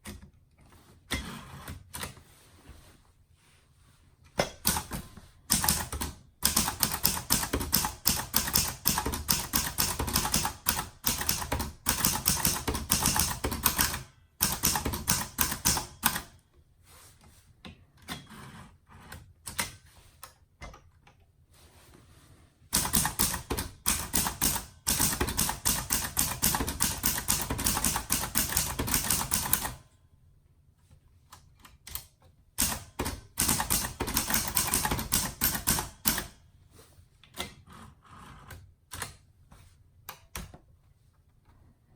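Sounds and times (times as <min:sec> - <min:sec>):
manual typewriter key strikes: 0:04.4 - 0:16.3, 0:22.7 - 0:29.8, 0:32.6 - 0:36.4.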